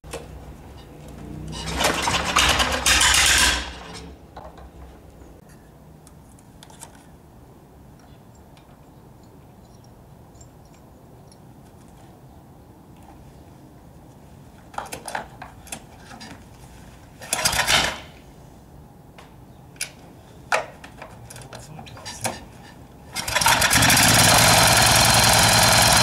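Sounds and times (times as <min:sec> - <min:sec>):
small engine starting and running: 0:01.3 - 0:04.0, 0:17.3 - 0:18.1, 0:23.1 - 0:26.0.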